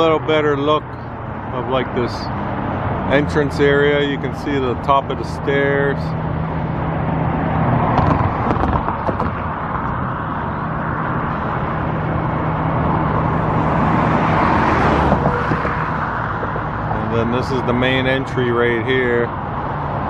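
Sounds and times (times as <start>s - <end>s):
road traffic noise: 0.0s - 20.0s.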